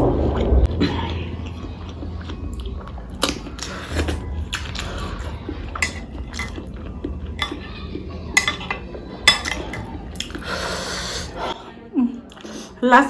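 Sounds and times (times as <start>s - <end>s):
low steady hum: 0.0s - 11.8s
dishes clinking: 5.8s - 6.7s, 7.4s - 7.7s, 8.3s - 10.0s.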